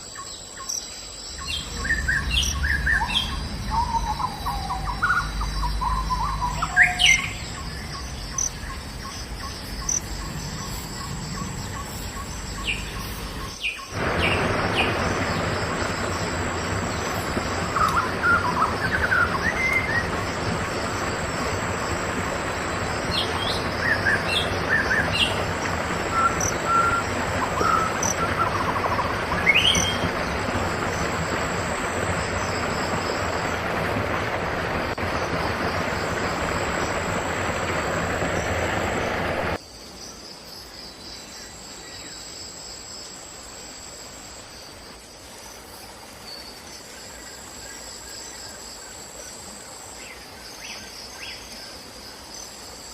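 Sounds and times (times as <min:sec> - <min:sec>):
high insect whine: 0:00.0 - 0:52.9
even rushing noise: 0:10.0 - 0:39.6
birds chirping and whistling: 0:26.1 - 0:30.1.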